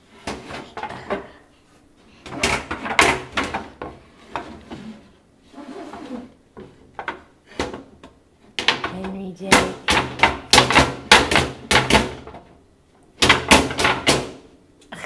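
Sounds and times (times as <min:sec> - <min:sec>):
kitchen things banging and rattling: 0:00.0 - 0:01.4, 0:02.2 - 0:05.0, 0:06.2 - 0:12.6, 0:13.2 - 0:14.4.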